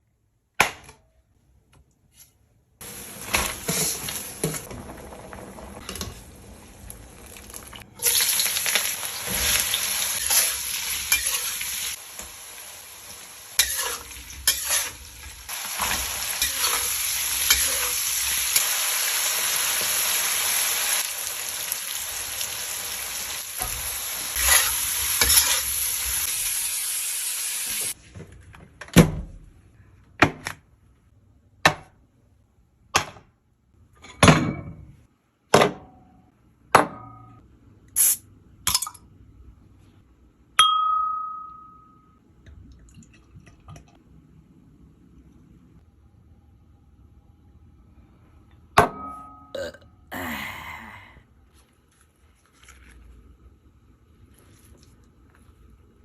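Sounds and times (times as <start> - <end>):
food sizzling in a pan: 2.8 - 28.0.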